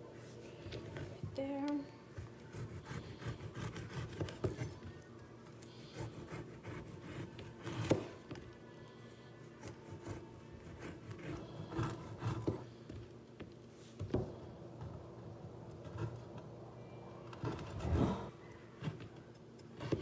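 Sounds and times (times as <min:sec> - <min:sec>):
knife chopping meat: 0:02.5 - 0:04.9, 0:05.9 - 0:08.2.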